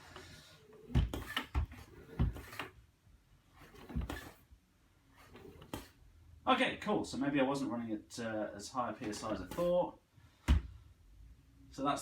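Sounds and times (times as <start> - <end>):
floor pump strokes with air hiss: 0.0 - 2.8.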